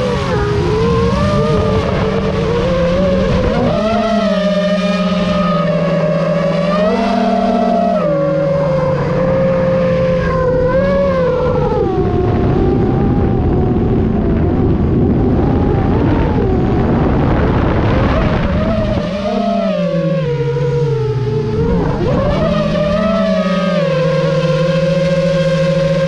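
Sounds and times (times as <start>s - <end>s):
wind rushing over camera: 0.0s - 25.9s
gyrocopter motor and propeller: 0.0s - 26.0s.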